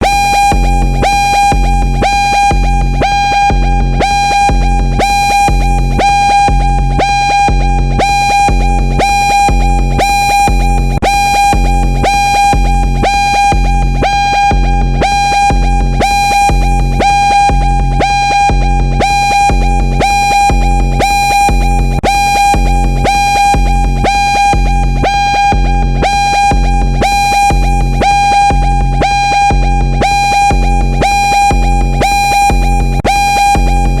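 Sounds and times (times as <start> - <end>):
low throbbing beat: 0.0 - 34.0
pulsing electronic alarm tone: 0.0 - 34.0.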